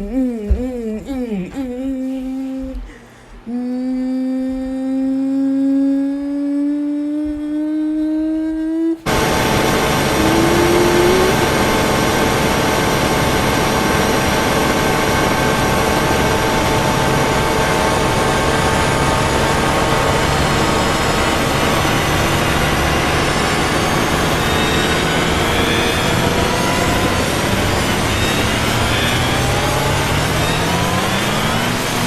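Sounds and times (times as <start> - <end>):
engine whining: 9.0 - 32.0
short rising tone: 9.1 - 32.0.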